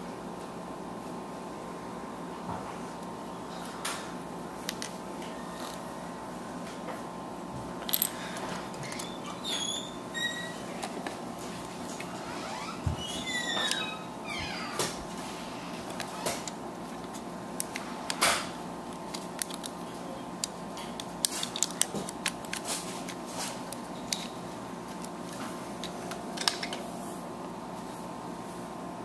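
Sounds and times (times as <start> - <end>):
steady low hum: 0.0 - 29.0
plastic parts clicking: 19.0 - 19.8, 20.4 - 24.3.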